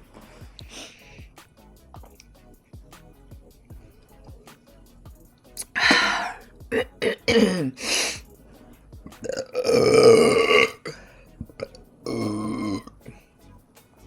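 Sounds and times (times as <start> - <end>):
person burping: 5.6 - 7.9, 9.1 - 13.0.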